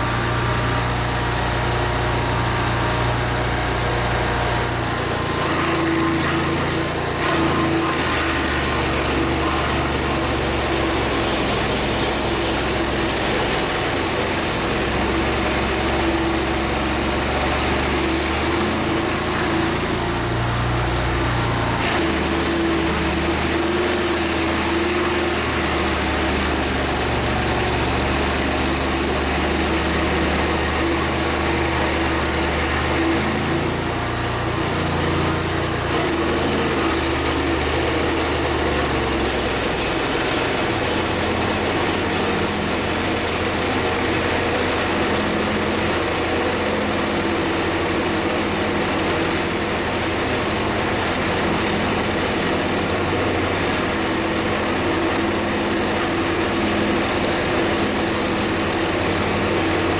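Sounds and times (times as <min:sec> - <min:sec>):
small petrol engine running: 0:00.0 - 0:59.9.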